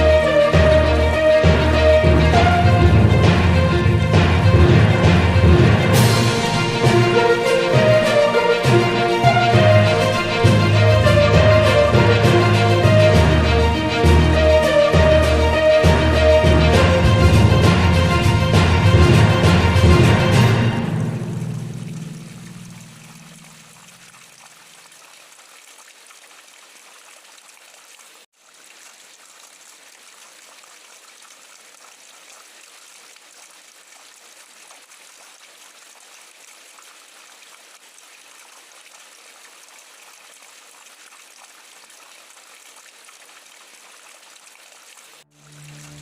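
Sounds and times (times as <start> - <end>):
steady rain hiss: 5.9 - 15.6, 27.9 - 46.0.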